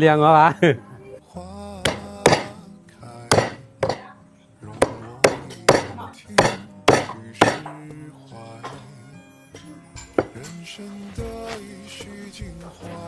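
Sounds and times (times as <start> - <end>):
knife chopping on board: 1.9 - 2.6, 3.3 - 4.0, 4.8 - 7.7.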